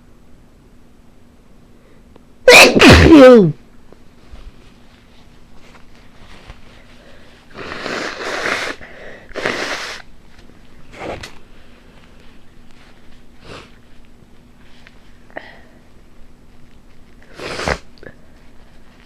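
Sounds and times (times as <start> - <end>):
woman sniffling: 7.0 - 10.1.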